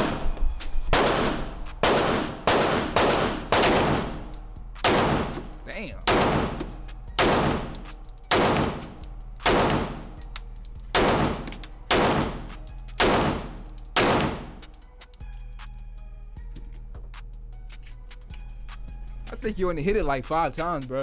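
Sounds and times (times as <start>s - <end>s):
handgun shots with echo: 0.9s - 10.3s, 10.9s - 14.8s.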